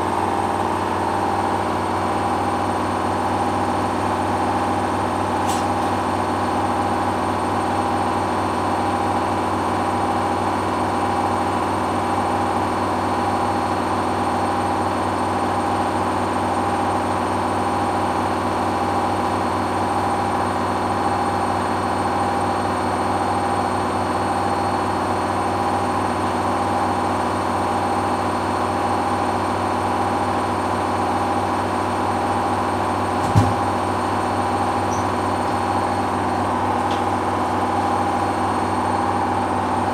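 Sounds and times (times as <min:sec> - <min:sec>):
washing machine spinning: 0:00.0 - 0:39.9
washing machine knock: 0:33.2 - 0:33.9.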